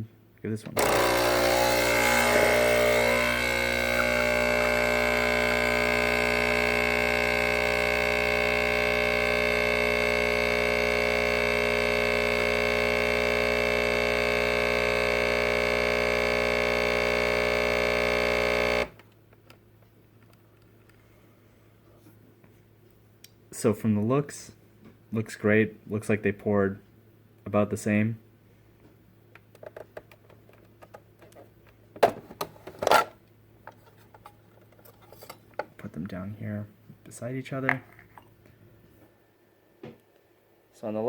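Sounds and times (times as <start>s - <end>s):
espresso machine pump buzzing: 0.8s - 19.0s.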